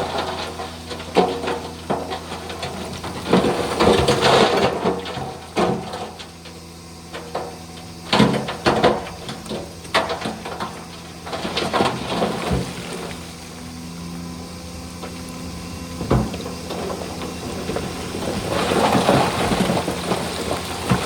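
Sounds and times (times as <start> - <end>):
bulldozer diesel engine running: 0.0 - 21.0.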